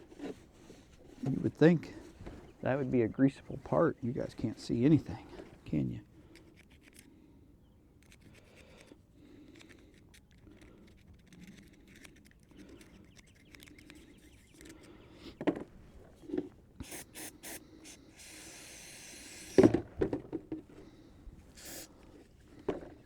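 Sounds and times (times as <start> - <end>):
metal parts clicking and scraping: 8.0 - 15.0
steady hiss: 16.8 - 19.7, 21.5 - 22.0.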